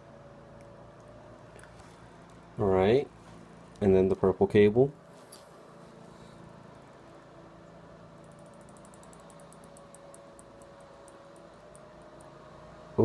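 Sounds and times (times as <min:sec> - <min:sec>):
faint electrical hum: 0:00.0 - 0:13.0
high-pitched ticking: 0:08.2 - 0:12.3.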